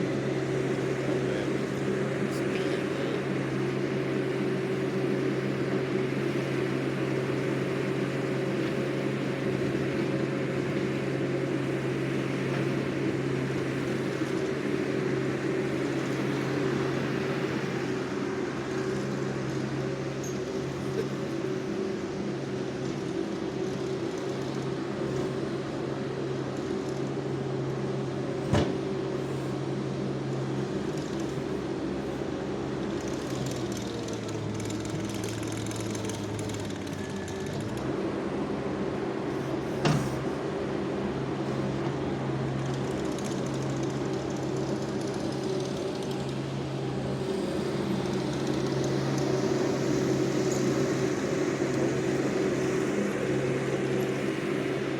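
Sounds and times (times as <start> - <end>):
track loader engine running: 0.0 - 54.9.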